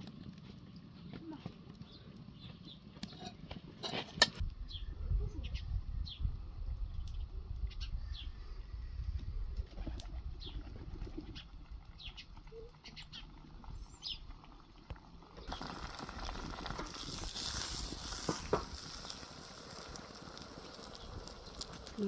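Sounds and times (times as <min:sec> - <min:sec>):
wood fire crackling hiss: 0:00.0 - 0:04.4, 0:13.5 - 0:22.0
birds chirping: 0:10.4 - 0:14.8.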